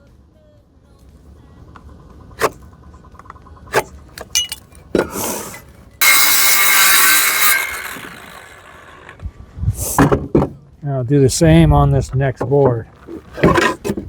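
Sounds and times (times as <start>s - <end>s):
power saw cutting wood: 4.9s - 10.2s.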